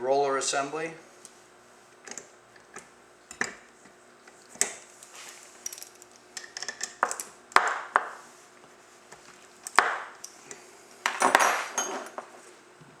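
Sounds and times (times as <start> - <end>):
metal parts clinking: 5.6 - 7.3, 11.1 - 12.3.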